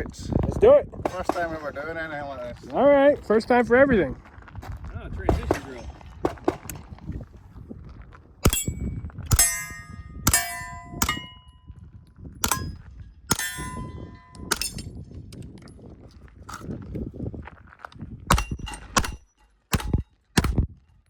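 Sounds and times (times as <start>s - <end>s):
steel plate clanging: 1.1s - 1.9s, 8.5s - 11.5s, 12.4s - 15.0s
gunshots: 1.1s - 2.2s, 5.3s - 6.8s, 18.3s - 20.6s.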